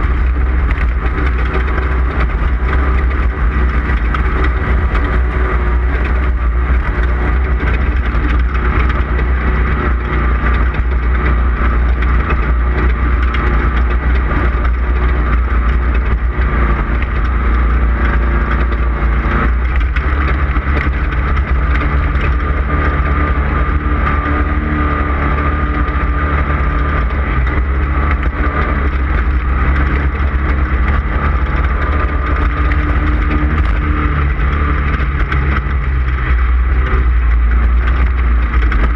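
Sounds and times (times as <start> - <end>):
vehicle engine running hard: 0.0 - 38.9.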